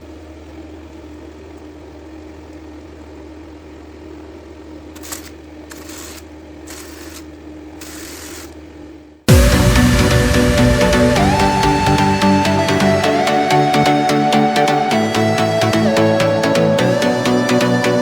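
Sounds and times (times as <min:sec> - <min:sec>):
electric motor humming: 0:05.0 - 0:08.6.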